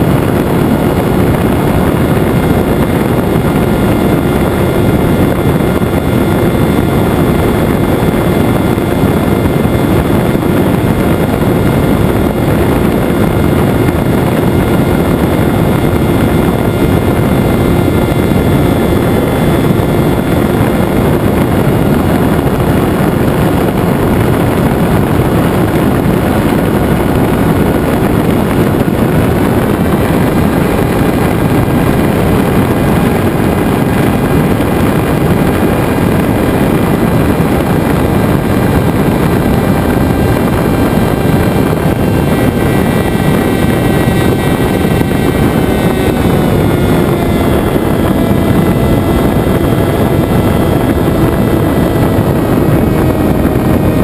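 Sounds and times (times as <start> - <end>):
motor and propeller whine: 0.0 - 54.0
wind rushing over airframe: 0.0 - 54.0.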